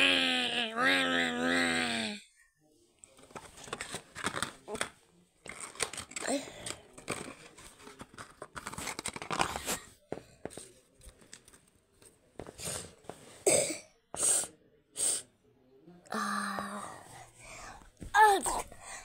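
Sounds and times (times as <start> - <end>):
person coughing: 13.4 - 13.9.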